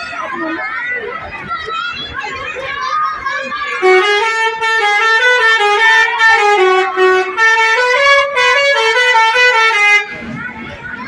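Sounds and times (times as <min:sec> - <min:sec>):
musical truck horn melody: 0:03.8 - 0:10.2.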